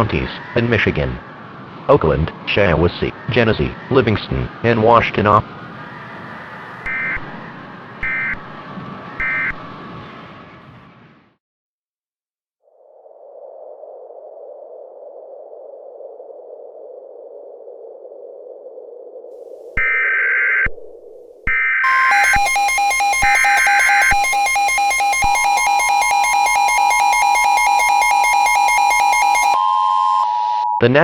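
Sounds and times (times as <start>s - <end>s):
warbling data bursts: 6.8s - 8.4s, 21.5s - 30.3s
loud pulsing alert tone: 21.8s - 30.3s.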